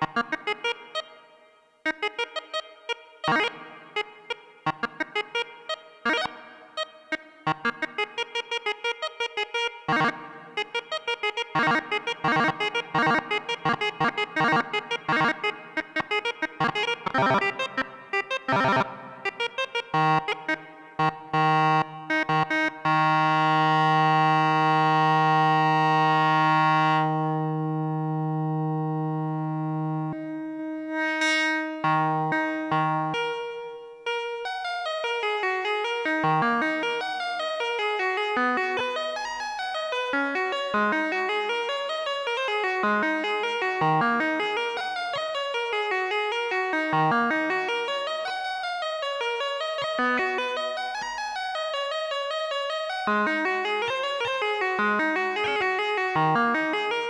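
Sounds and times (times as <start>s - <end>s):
synthesizer staccato notes: 1.9s - 30.2s.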